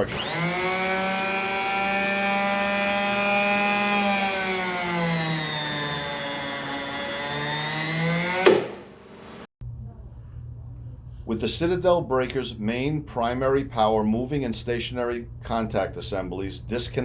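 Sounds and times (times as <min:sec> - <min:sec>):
motor whine: 0:00.0 - 0:09.5
sharp mechanical clunk: 0:08.4 - 0:08.9.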